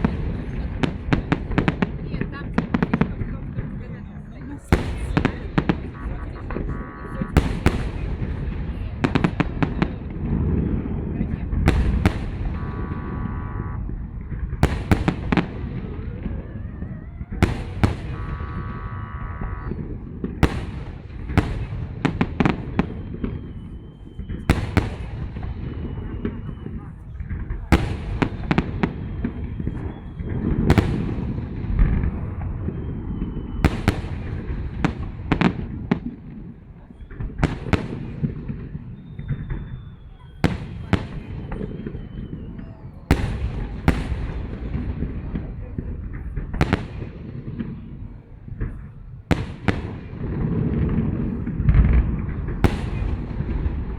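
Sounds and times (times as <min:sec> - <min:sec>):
low background rumble: 0:00.0 - 0:22.7
fireworks bangs: 0:00.0 - 0:53.9
rising whistle: 0:12.4 - 0:13.9, 0:16.0 - 0:19.9, 0:32.5 - 0:33.8, 0:41.6 - 0:42.8.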